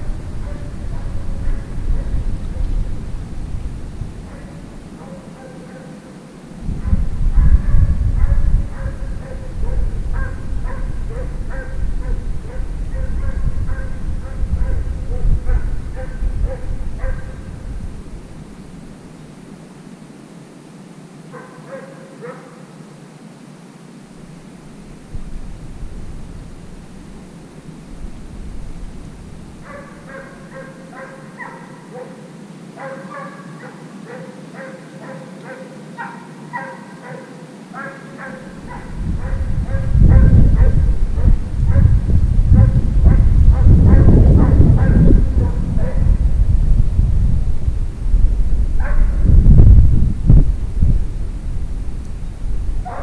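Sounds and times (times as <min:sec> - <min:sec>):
hound baying: 0:00.0 - 0:02.2, 0:04.2 - 0:17.5, 0:21.3 - 0:22.7, 0:29.6 - 0:46.2
heavy low rumble: 0:00.0 - 0:05.0, 0:06.5 - 0:19.0, 0:38.5 - 0:53.0
hound baying in short yelps: 0:29.7 - 0:39.4.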